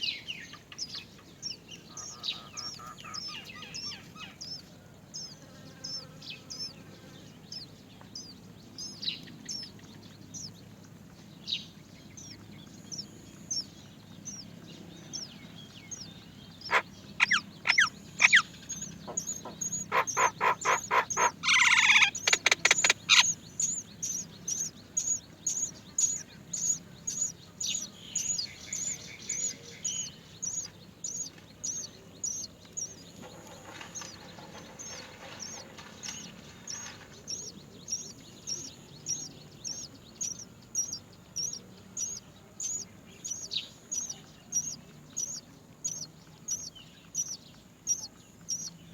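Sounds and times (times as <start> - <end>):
nestlings begging with thin chirps: 0.0 - 48.9
harsh bird calls: 0.6 - 10.6, 12.2 - 48.9.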